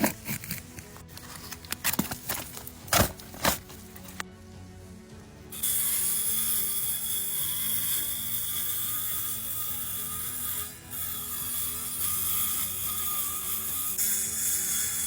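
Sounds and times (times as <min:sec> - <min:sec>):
shingles and wood scraping and prying: 0:00.0 - 0:04.2.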